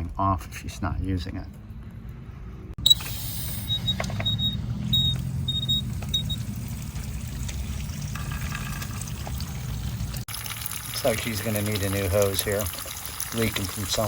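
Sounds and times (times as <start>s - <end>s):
water rushing through garden hose: 2.9s - 14.0s.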